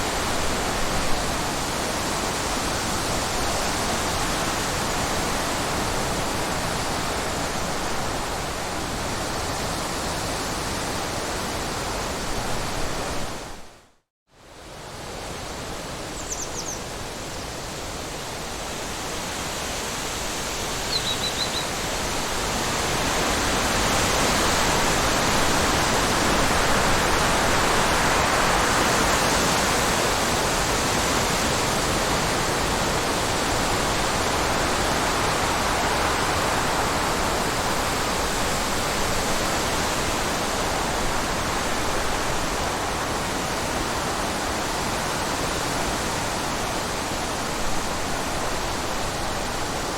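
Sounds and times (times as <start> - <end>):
faint bird chirps: 16.2 - 16.8, 20.9 - 21.7.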